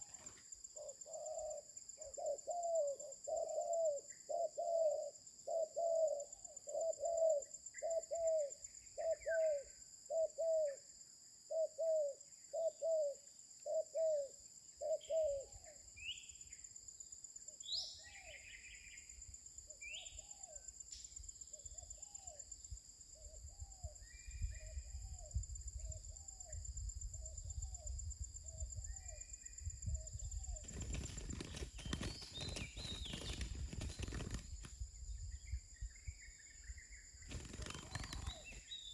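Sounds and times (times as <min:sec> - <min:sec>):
dove cooing: 0:00.0 - 0:10.8, 0:11.5 - 0:15.8, 0:37.4 - 0:38.6
small birds chirping: 0:27.5 - 0:38.9.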